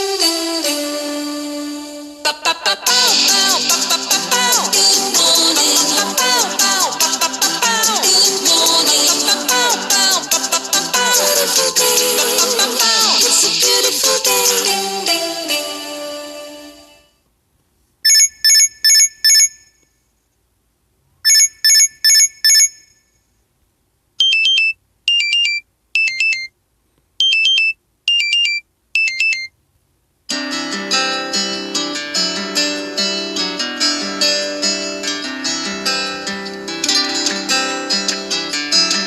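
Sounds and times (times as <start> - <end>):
phone alarm beeps: 18.1 - 19.7, 21.3 - 23.0, 24.2 - 26.5, 27.2 - 29.5
paired beeps falling in pitch: 24.2 - 26.5, 27.2 - 29.5
plucked-string melody: 30.3 - 39.0.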